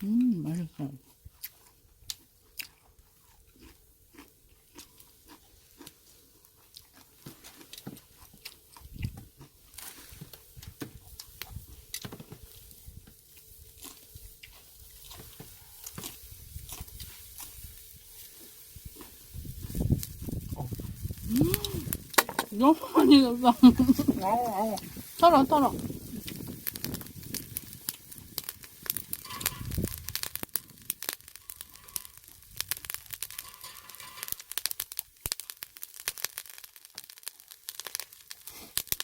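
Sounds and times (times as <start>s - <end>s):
chewing and crunching: 0.0s - 39.0s
mouth clicks: 21.3s - 22.2s.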